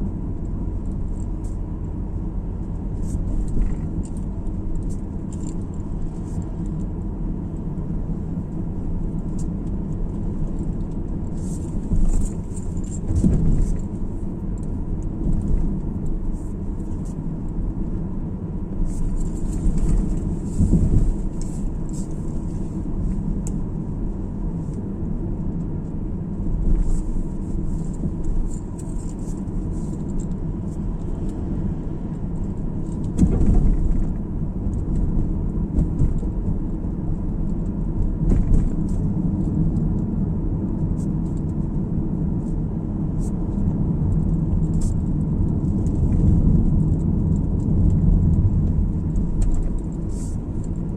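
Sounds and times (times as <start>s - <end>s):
tyre and road rumble: 0.0s - 50.9s
car thumping over bumps: 33.0s - 34.4s, 35.0s - 36.5s.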